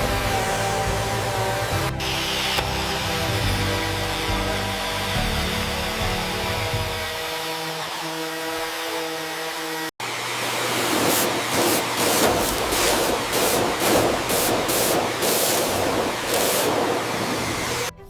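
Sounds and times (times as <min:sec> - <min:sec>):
motor humming: 0:10.1 - 0:17.9
pulsed spraying hiss: 0:11.2 - 0:17.9.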